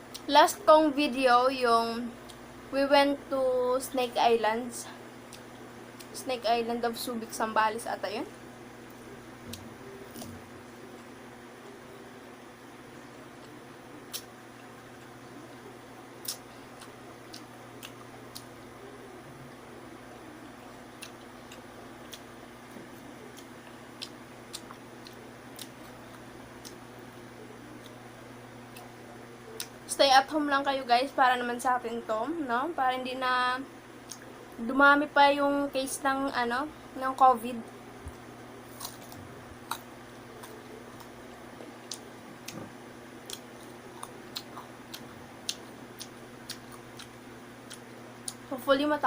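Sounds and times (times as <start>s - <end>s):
faint steady hum: 0.0s - 49.0s
wet mouth clicks and smacks: 16.2s - 18.5s.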